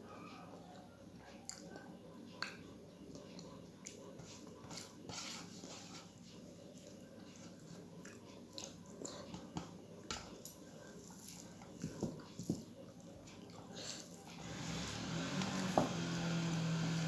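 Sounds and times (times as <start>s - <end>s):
person chewing food: 6.7s - 9.6s.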